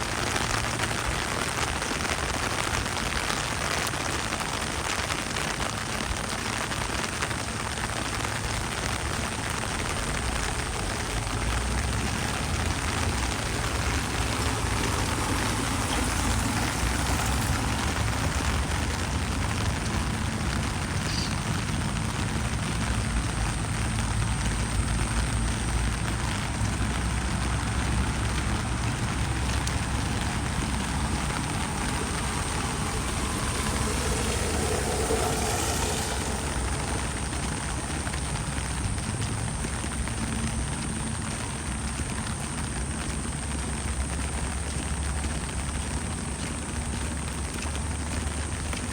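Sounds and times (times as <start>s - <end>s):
low engine drone: 0.0s - 48.9s
steady rain falling: 0.0s - 48.9s.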